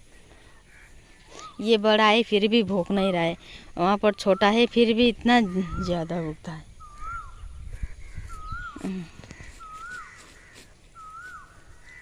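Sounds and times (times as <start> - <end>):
bird whistling call: 6.8 - 7.5, 8.3 - 10.2, 11.0 - 12.0.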